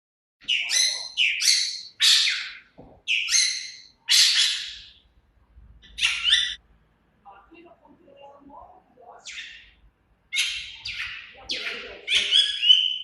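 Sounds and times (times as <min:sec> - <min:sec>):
bird squawking harshly: 0:00.4 - 0:05.0, 0:05.9 - 0:06.6, 0:10.3 - 0:13.0.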